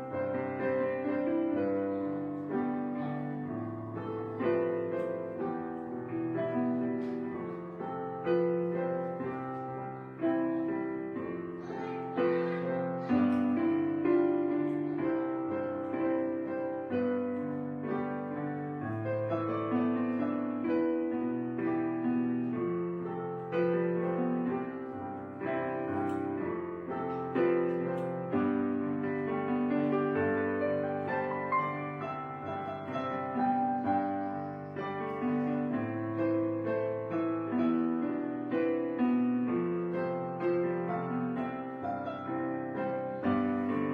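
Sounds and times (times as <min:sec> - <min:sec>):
gentle solo piano: 0:00.0 - 0:43.9.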